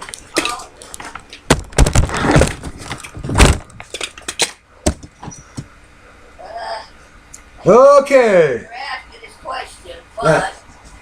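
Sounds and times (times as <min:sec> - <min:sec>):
objects knocking and clattering: 0:00.0 - 0:05.7.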